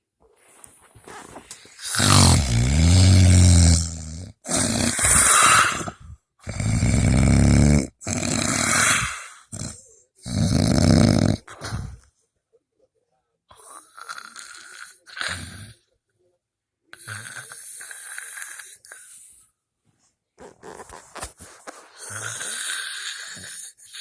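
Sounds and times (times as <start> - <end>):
person snoring: 1.6 - 12.0, 13.5 - 15.8, 17.0 - 19.1, 22.0 - 24.0.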